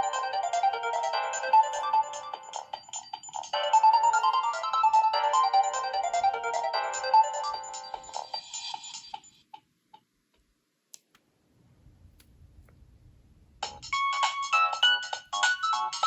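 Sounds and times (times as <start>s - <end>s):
phone ringtone melody: 0.0s - 9.4s, 13.8s - 16.0s.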